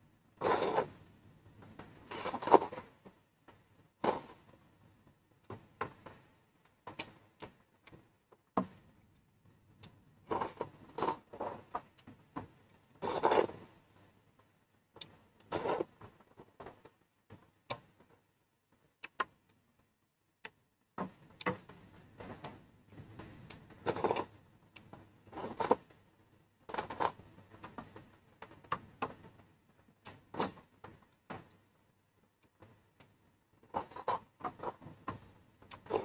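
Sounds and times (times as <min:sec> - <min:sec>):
slurping and chewing: 0:33.7 - 0:34.8, 0:35.7 - 0:36.0.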